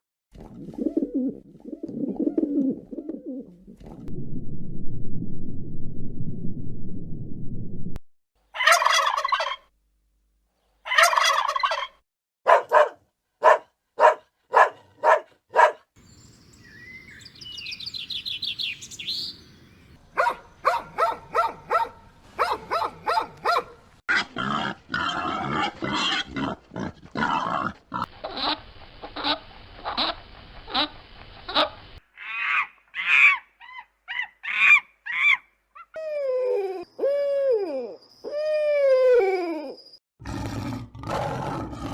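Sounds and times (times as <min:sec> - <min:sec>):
turkey gobbling: 0:08.6 - 0:09.7, 0:10.9 - 0:12.0
birds calling: 0:15.6 - 0:21.8.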